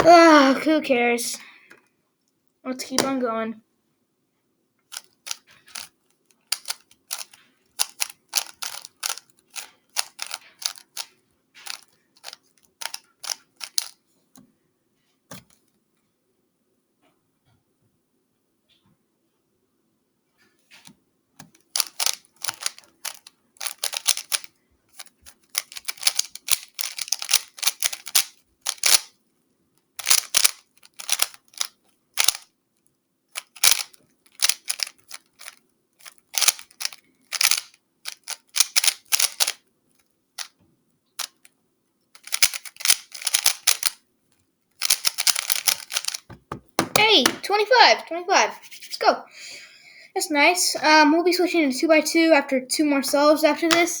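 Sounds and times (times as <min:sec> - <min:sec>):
puzzle cube clicking as turned: 0:04.9 - 0:14.0, 0:21.4 - 0:29.1, 0:30.0 - 0:32.5, 0:33.4 - 0:39.6, 0:40.4 - 0:40.6, 0:41.2 - 0:41.5, 0:42.2 - 0:44.0, 0:44.8 - 0:47.6.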